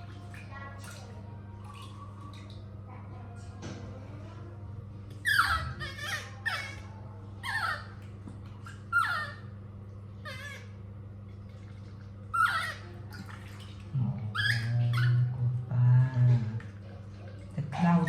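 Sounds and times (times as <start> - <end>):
low steady hum: 0.0 - 18.0
baby monkey squealing: 5.2 - 8.0, 8.6 - 9.5, 10.2 - 10.8, 12.3 - 12.9, 14.3 - 15.3.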